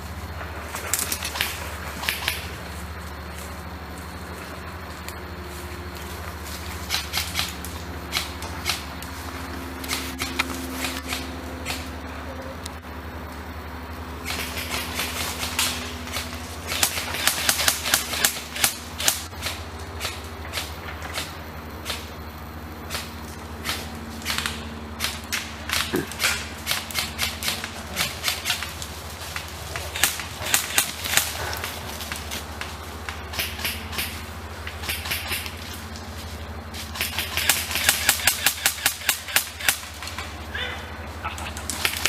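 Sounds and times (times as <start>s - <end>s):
airsoft guns firing: 14.2s - 22.1s, 22.9s - 28.7s, 29.7s - 32.2s, 36.9s - 40.3s.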